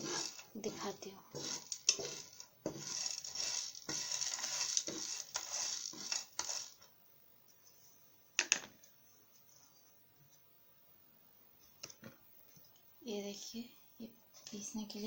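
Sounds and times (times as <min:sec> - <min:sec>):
spices rattling in a pan: 0:00.0 - 0:06.9.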